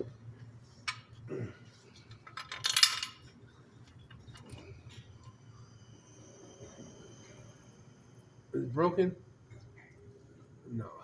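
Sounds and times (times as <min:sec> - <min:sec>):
small metal parts clinking: 0:02.2 - 0:03.3.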